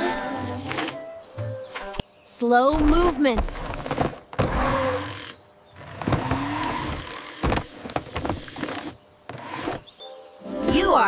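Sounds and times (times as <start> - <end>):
small motor whirring: 4.4 - 9.8.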